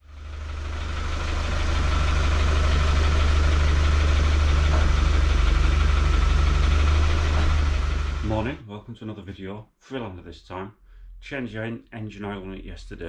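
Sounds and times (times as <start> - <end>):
vehicle engine idling: 0.0 - 8.6.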